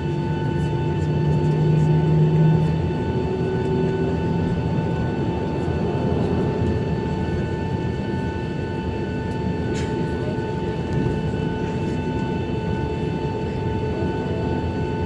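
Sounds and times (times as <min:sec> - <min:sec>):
jet engine hum and whine: 0:00.0 - 0:15.0.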